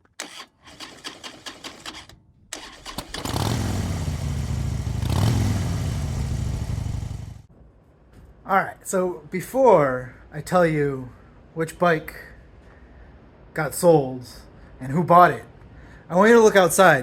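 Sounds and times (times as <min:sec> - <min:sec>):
rapid starter clicks: 0:00.0 - 0:04.4
motorcycle engine running: 0:00.9 - 0:07.5.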